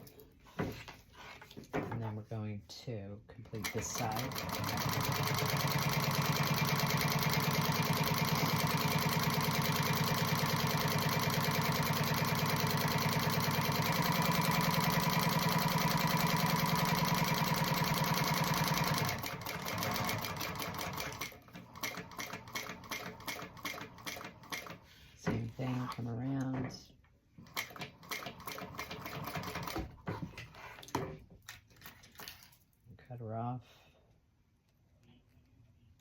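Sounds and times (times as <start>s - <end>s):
sewing machine running: 3.6s - 24.8s, 27.4s - 29.8s.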